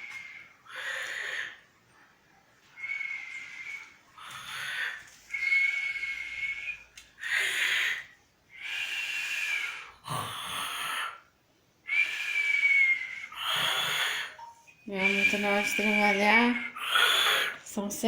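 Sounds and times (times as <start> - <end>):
man snoring with whistling note: 8.8 - 11.2, 12.0 - 14.4, 15.1 - 17.6.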